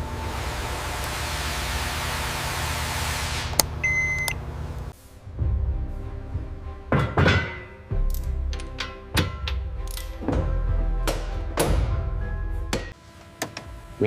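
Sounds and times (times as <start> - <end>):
short beep: 3.8 - 4.4
background music: 5.0 - 13.0
thuds: 6.9 - 7.8.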